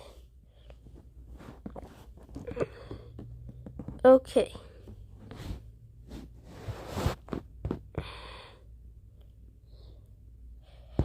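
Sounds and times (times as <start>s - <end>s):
person breathing heavily: 2.4s - 3.3s, 7.9s - 8.8s.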